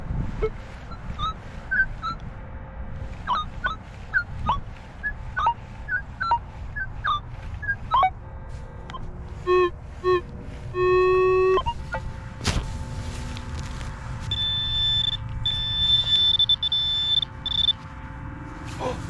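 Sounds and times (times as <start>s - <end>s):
metal detector short beeps: 0.4s - 2.2s, 3.2s - 8.1s, 8.9s - 12.0s, 14.3s - 17.8s.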